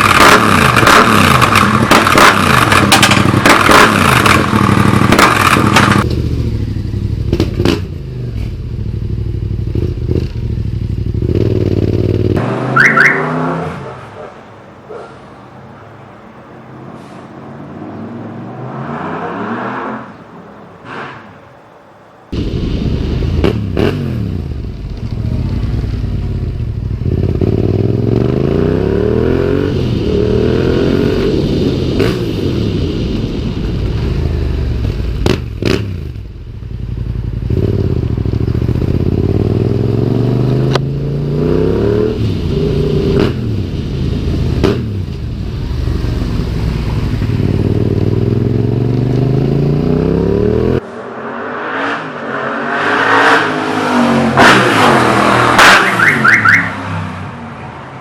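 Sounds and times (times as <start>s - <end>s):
sharp exhaust cracks: 0.0s - 8.6s
motorcycle engine accelerating: 0.0s - 13.7s, 22.4s - 56.6s.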